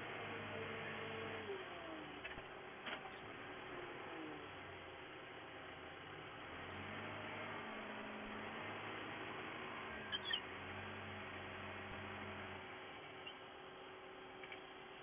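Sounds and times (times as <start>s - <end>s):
diesel engine running: 0.0s - 15.0s
brief high squeaks: 10.0s - 10.4s.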